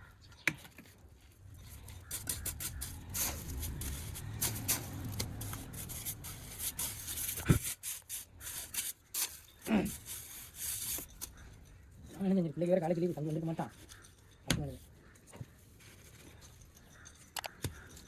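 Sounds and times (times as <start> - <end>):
hand tools scraping: 1.6 - 11.4.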